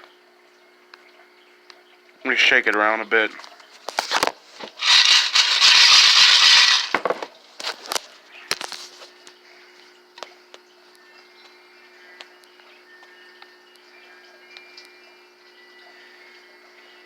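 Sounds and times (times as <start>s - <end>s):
faint steady hum: 0.0s - 17.0s
coins rattling in coin bank: 4.8s - 7.0s.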